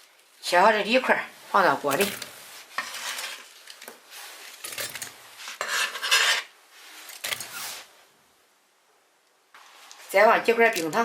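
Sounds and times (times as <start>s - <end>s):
pieces clattering against pot: 4.5s - 6.4s
rasping scrapes: 5.5s - 6.5s.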